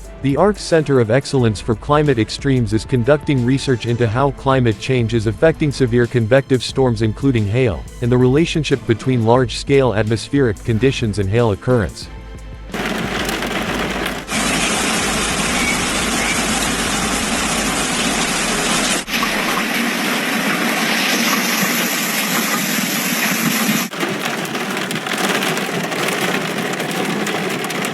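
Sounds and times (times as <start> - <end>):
heavy hail and rain pounding: 12.7 - 27.9.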